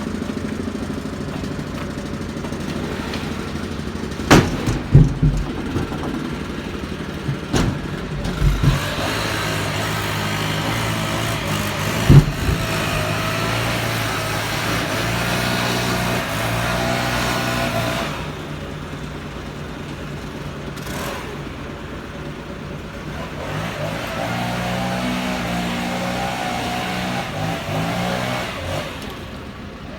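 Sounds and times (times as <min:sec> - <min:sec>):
engine running: 0:00.0 - 0:29.9
sharp knocks: 0:04.2 - 0:13.8.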